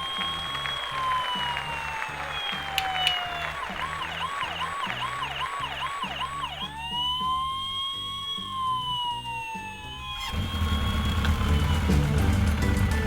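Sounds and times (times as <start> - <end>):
background music: 0.0 - 13.0
electronic siren yelping and wailing: 0.0 - 13.0.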